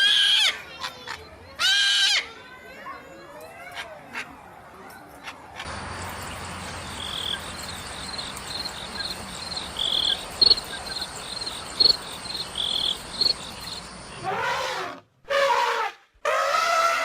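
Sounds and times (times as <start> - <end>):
small animals chirping: 6.9 - 13.9
sharp loud calls: 6.9 - 17.0.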